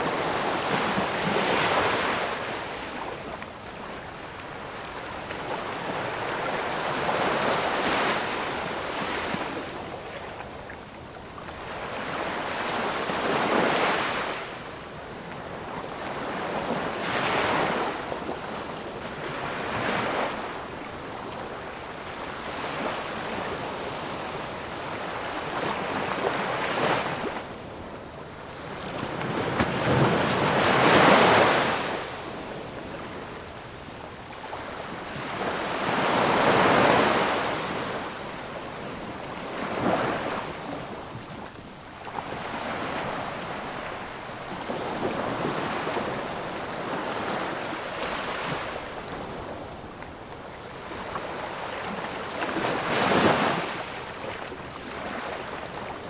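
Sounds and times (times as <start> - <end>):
ocean waves breaking on shore: 15.5 - 56.0.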